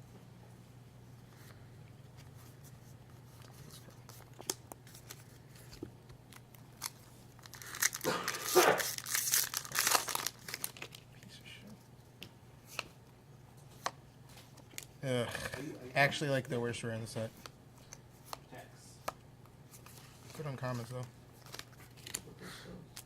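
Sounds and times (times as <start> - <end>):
foil wrapper tearing and crinkling: 6.3 - 11.0.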